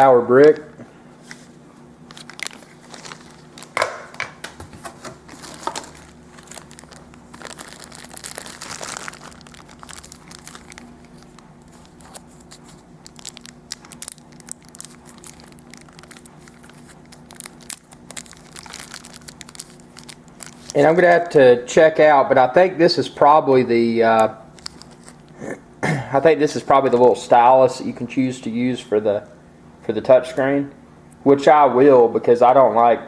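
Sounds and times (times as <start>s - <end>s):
packaging crinkling and rustling: 1.2s - 21.4s, 24.5s - 25.3s.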